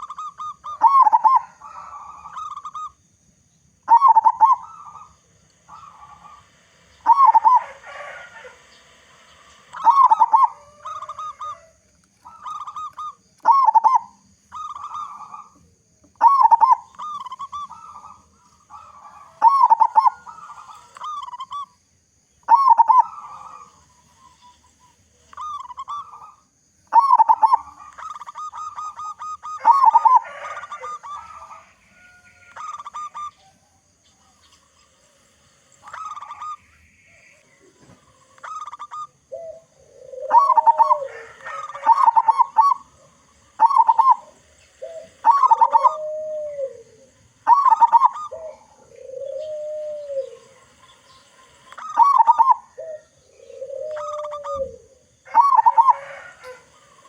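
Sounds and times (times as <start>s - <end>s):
dove cooing: 0.0s - 3.0s, 3.8s - 21.8s, 22.4s - 57.0s.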